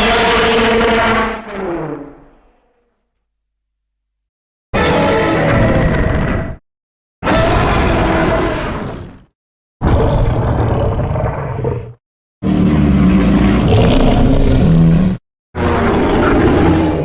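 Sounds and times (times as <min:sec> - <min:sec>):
monster roar: 0:04.8 - 0:06.6, 0:07.2 - 0:17.0.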